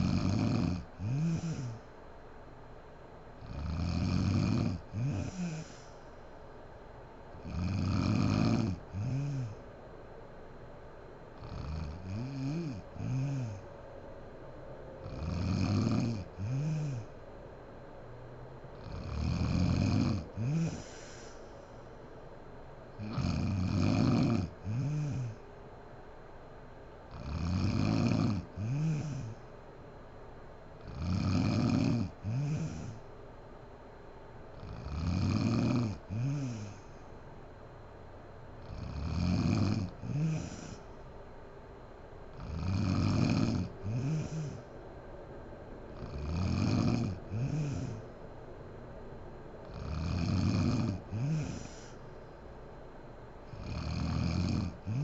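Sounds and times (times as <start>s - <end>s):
woman snoring: 0.0s - 1.9s, 3.4s - 6.0s, 7.4s - 9.6s, 11.4s - 13.6s, 15.0s - 17.1s, 18.8s - 21.4s, 23.0s - 25.4s, 27.1s - 29.4s, 30.8s - 33.0s, 34.6s - 37.0s, 38.6s - 40.9s, 42.3s - 44.7s, 46.0s - 48.1s, 49.6s - 52.1s, 53.5s - 55.0s
quiet breathing: 0.0s - 55.0s.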